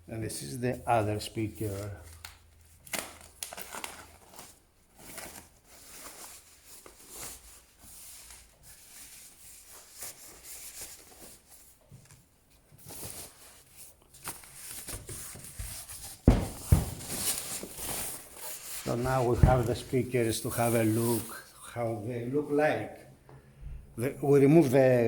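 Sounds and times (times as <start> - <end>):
packaging rustling and crinkling: 1.6 - 21.4
heavy thump: 16.3 - 17.4, 19.1 - 20.0.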